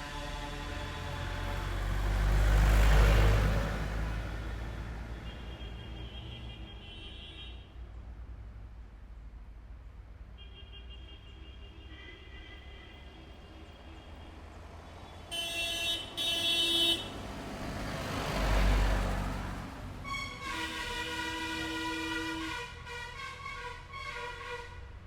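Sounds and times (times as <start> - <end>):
vehicle horns: 0.0 - 3.4, 5.1 - 7.8, 10.3 - 17.4, 20.0 - 25.0
road traffic: 0.0 - 25.0
vehicle passing close: 0.6 - 5.1, 17.0 - 20.0.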